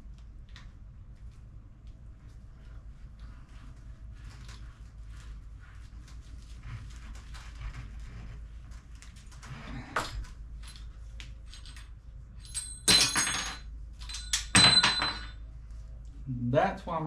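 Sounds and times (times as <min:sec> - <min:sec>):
metal parts clicking and rattling: 0:10.0 - 0:15.4
loud metallic clatters with ringing: 0:12.4 - 0:15.4.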